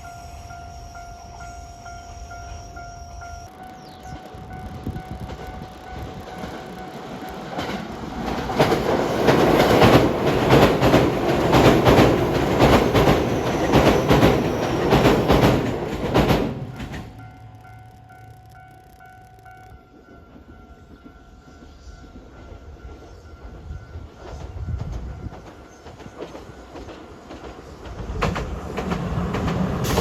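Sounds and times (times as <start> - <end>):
train passing: 0.0 - 30.0
wheels clattering over rail joints: 6.3 - 17.2.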